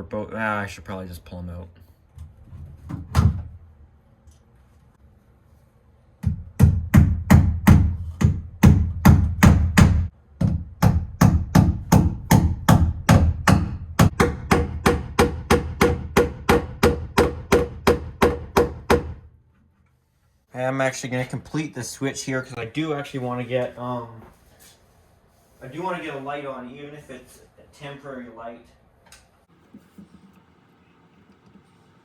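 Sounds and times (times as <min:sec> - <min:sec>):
hammer striking staples: 0:06.2 - 0:19.2.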